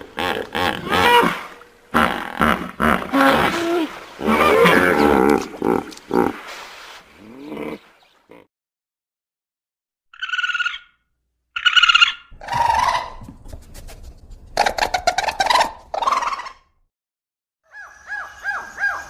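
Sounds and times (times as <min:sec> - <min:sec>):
animal roar: 0:03.0 - 0:06.4
high-pitched animal calls: 0:10.1 - 0:11.0, 0:11.6 - 0:13.2.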